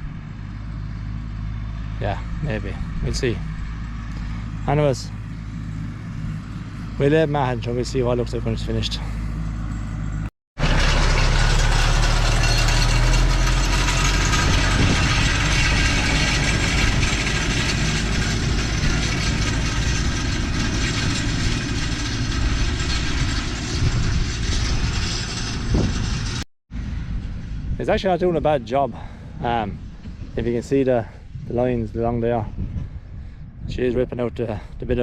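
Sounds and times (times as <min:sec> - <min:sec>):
tractor engine running under load: 0:00.0 - 0:28.0.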